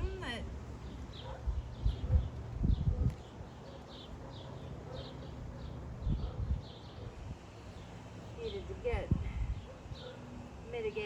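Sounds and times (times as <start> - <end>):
bird chirping: 0.8 - 8.8.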